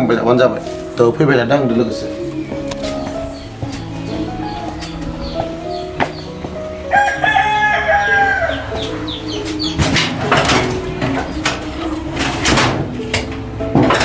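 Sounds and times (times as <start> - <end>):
chickens clucking: 0.0 - 14.0
rooster crowing: 1.9 - 12.2.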